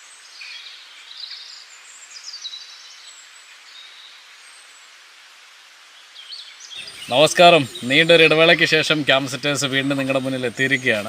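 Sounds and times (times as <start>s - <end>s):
steady outdoor hiss: 0.0s - 11.0s
birds chirping and calling: 6.3s - 11.0s.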